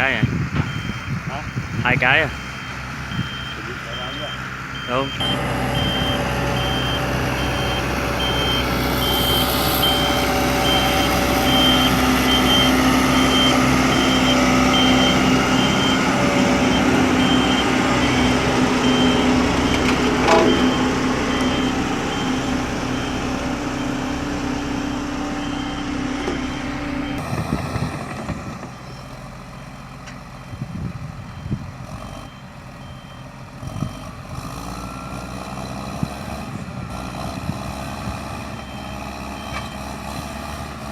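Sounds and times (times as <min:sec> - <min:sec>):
diesel engine running: 0:00.0 - 0:40.9
reverse alarm beeping: 0:00.2 - 0:24.0, 0:25.3 - 0:27.2.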